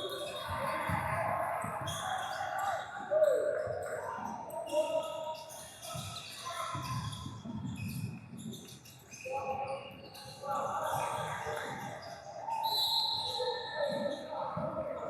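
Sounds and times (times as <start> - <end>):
crowd chatter: 0.0 - 8.0.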